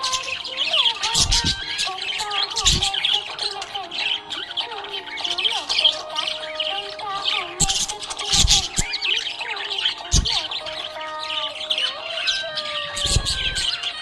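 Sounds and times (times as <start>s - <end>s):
budgies chirping and warbling: 0.0s - 14.0s
low thumps: 10.1s - 10.5s.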